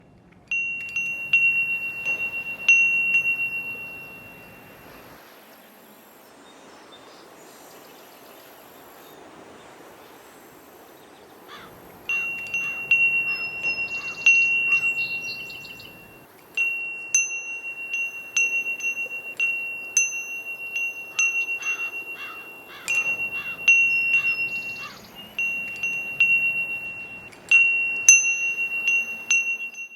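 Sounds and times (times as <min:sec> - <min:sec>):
metal bell ringing: 0:00.5 - 0:05.2, 0:12.0 - 0:29.9.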